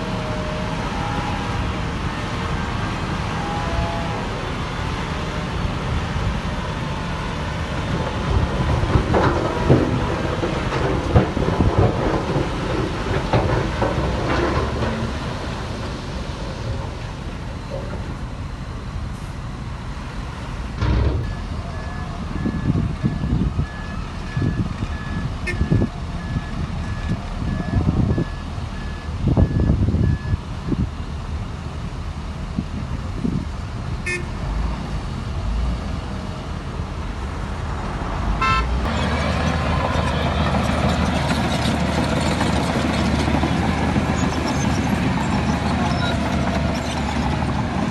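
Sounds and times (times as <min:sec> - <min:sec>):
heavy diesel machinery running: 0:00.0 - 0:47.9
clanks and knocks: 0:08.6 - 0:15.4, 0:20.8 - 0:21.4
reversing alarm beeping: 0:21.2 - 0:30.4.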